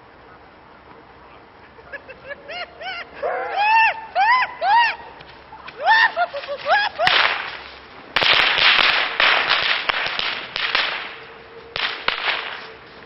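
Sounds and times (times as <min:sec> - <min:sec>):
sharp firework cracks: 0:07.0 - 0:12.8.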